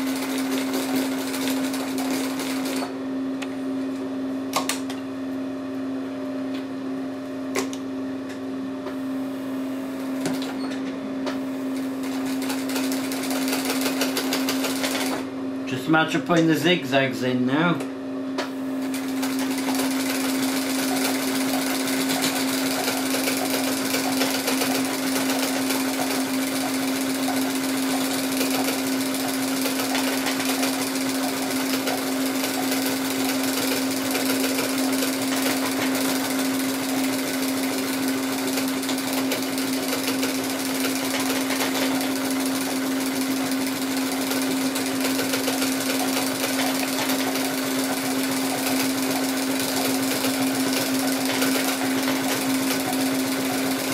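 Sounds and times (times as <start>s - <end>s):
sewing machine running: 0.0s - 3.0s, 11.7s - 15.3s, 18.8s - 53.9s.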